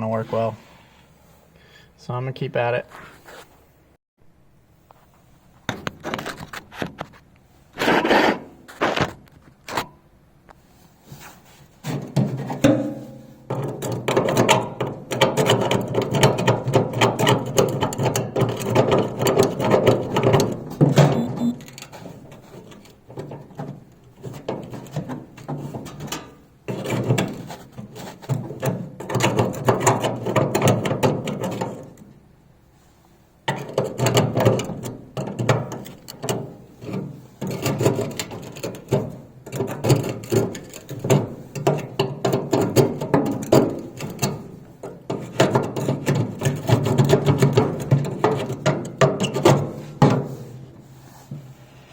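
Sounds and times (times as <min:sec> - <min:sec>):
metal scraper scraping rusted parts: 0:33.5 - 0:50.6.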